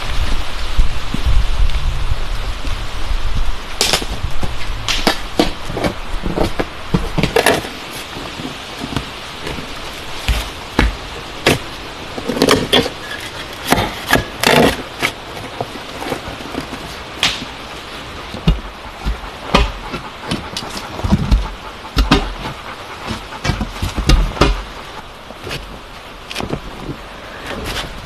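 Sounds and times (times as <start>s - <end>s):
steady background hiss: 0.0s - 28.0s
knocks and thuds: 18.4s - 24.8s.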